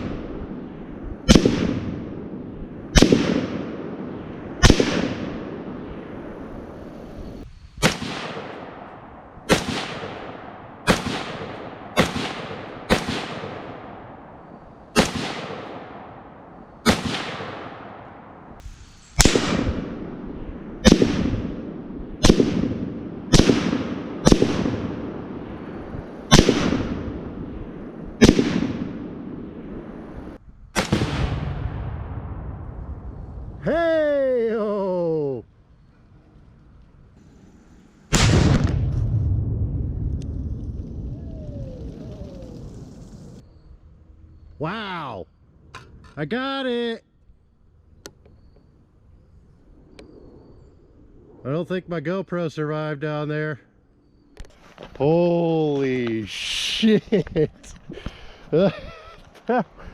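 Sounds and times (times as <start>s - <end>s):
gunshots with echo: 0.0s - 5.9s, 7.8s - 18.4s, 19.2s - 25.6s, 26.3s - 27.6s, 28.2s - 29.6s.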